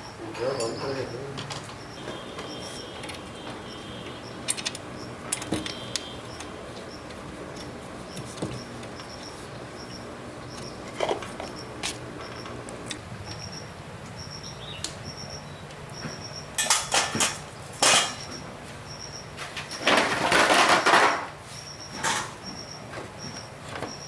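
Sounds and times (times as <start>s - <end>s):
metal tools clinking: 4.4s - 6.5s, 16.6s - 18.4s
metal parts clattering: 16.6s - 18.2s, 19.8s - 21.3s.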